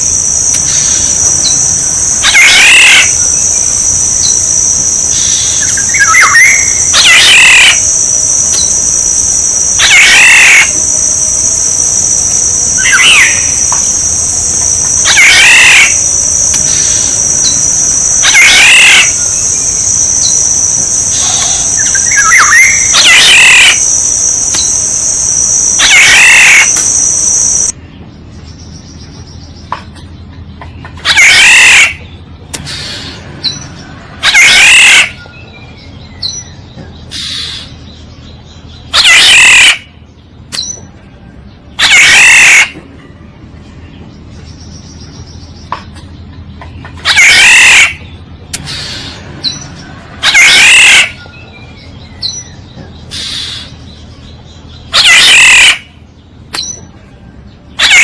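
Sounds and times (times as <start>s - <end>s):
high insect buzz: 0.0s - 27.7s
oriole calling: 0.0s - 27.8s, 34.2s - 35.2s, 38.9s - 39.8s, 41.8s - 42.8s, 47.0s - 48.0s, 50.2s - 51.7s, 54.9s - 55.9s, 57.8s - 58.0s.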